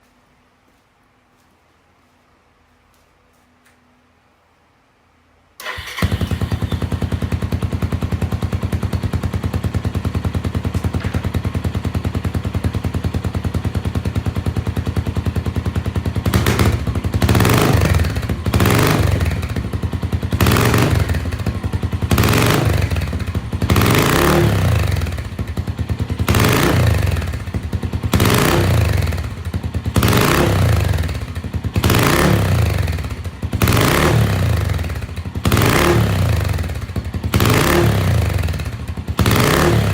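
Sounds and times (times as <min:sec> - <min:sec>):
engine revving: 0:05.6 - 0:10.4, 0:16.2 - 0:39.9
motorcycle engine idling: 0:05.6 - 0:39.9.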